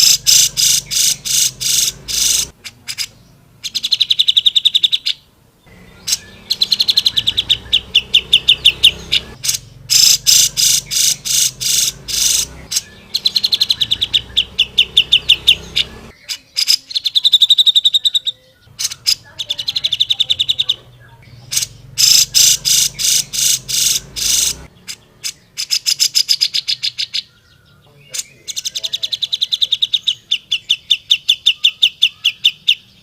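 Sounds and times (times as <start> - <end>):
bird singing rattling trills: 0.0 - 33.0.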